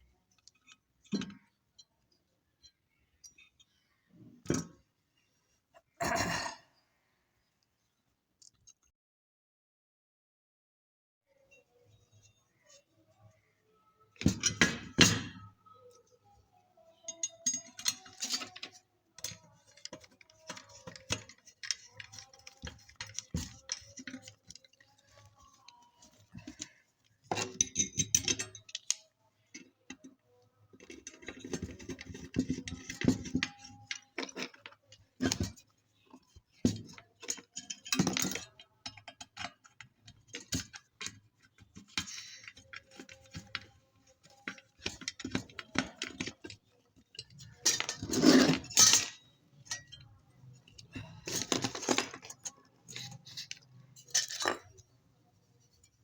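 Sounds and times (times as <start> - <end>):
metal parts rattling: 17.0 - 30.0, 30.8 - 55.0
metallic clinks of hand tools: 17.1 - 30.0.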